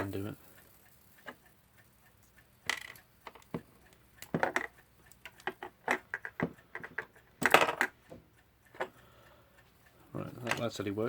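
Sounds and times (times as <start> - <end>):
small metal parts clicking: 2.6 - 8.1.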